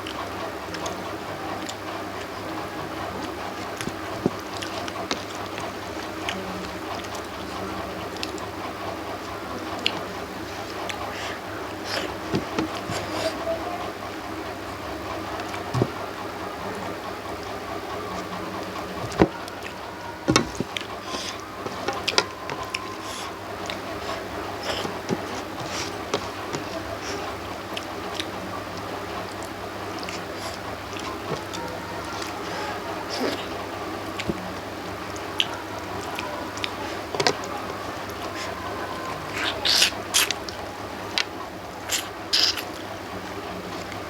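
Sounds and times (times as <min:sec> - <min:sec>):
chewing food: 0:00.0 - 0:44.0
steady low hum: 0:00.0 - 0:44.0
wet chewing and mouth smacks: 0:39.3 - 0:40.6, 0:41.2 - 0:42.9.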